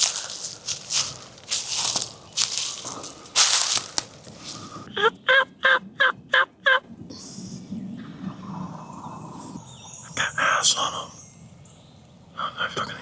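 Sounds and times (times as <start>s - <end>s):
rustle of brush or clothing: 0.0s - 4.9s.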